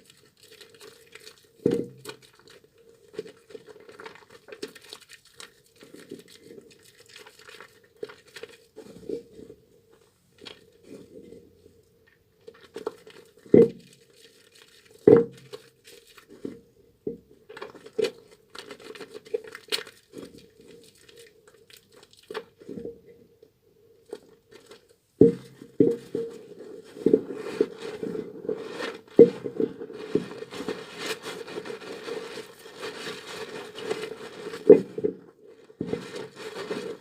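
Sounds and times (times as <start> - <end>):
soap squishing in wet hands: 0.0 - 8.8, 12.5 - 16.4, 17.4 - 22.6.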